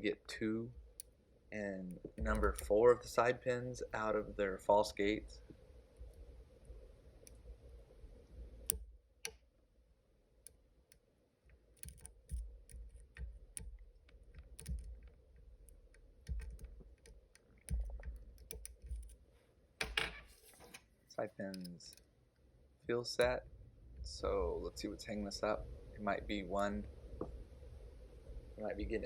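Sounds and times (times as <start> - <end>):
low handling thuds: 2.0 - 3.0
metallic lock pick clicks: 11.7 - 19.2, 21.5 - 22.1.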